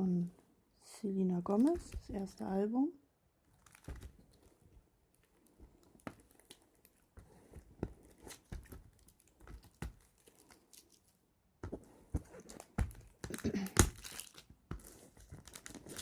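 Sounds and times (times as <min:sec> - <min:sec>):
plastic case clicking and crinkling: 0:03.5 - 0:07.0.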